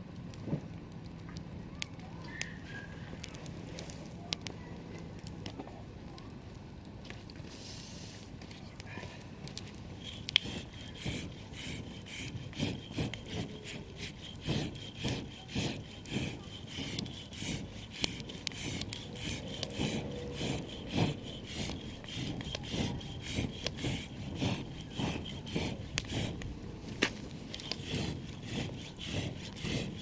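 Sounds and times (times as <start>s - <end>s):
back-and-forth scraping strokes: 9.5s - 30.0s.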